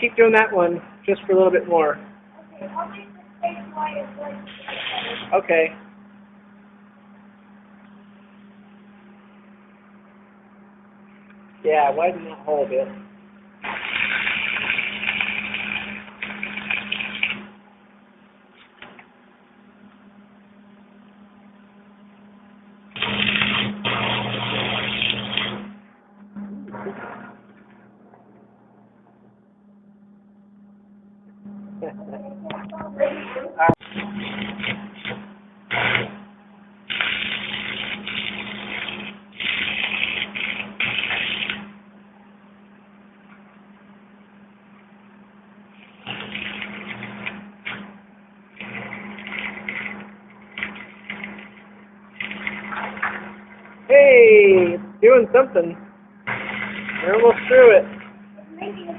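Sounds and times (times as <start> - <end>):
steady low hum: 0.0 - 58.9
welding arc crackling: 3.9 - 5.7, 13.6 - 17.7, 22.9 - 25.9, 33.7 - 41.8, 45.7 - 58.9
cutting torch hissing: 4.4 - 5.5, 13.6 - 17.5, 23.0 - 25.7, 36.9 - 41.7, 56.3 - 58.2.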